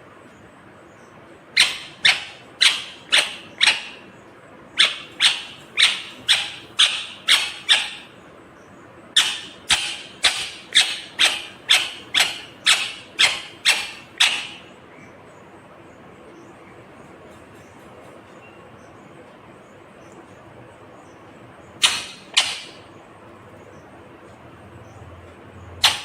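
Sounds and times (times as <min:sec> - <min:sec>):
parakeet giving sharp calls: 0:01.5 - 0:04.1, 0:04.7 - 0:08.2, 0:09.2 - 0:14.8, 0:21.8 - 0:23.0, 0:25.8 - 0:26.0.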